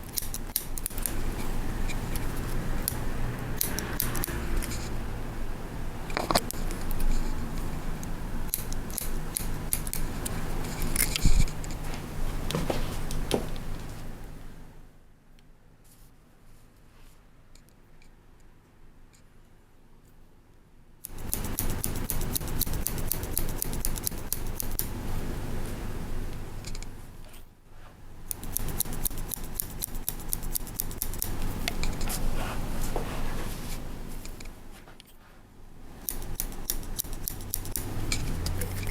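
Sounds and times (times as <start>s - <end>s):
scissors snipping hair: 0.0s - 4.8s, 8.5s - 11.5s, 21.1s - 24.9s, 28.3s - 32.2s, 36.0s - 38.9s.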